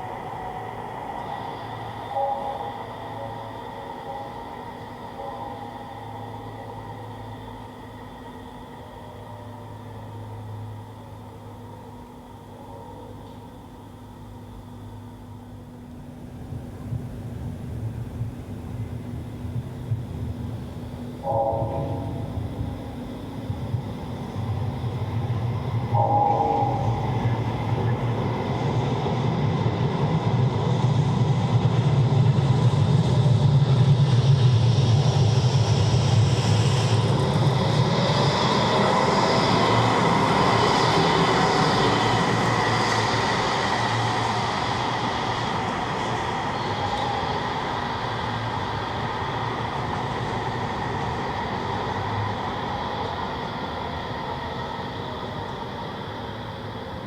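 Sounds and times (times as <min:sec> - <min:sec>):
tram rumbling on rails: 0:00.0 - 0:57.0
short pitched tone: 0:21.2 - 0:22.6, 0:25.9 - 0:28.0
faint gliding squeal: 0:21.2 - 0:23.4, 0:25.6 - 0:29.0
electric whine: 0:21.2 - 0:29.0.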